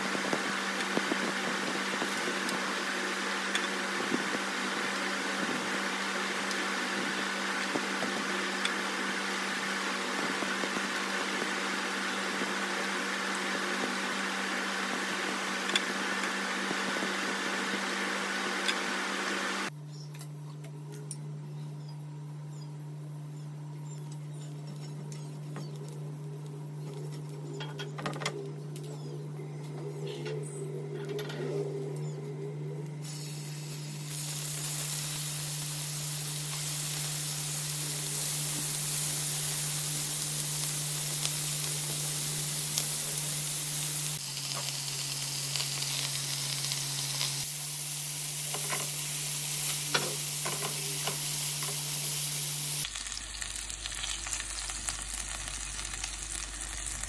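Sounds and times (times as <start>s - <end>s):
meat skewers sizzling: 33.0s - 57.0s.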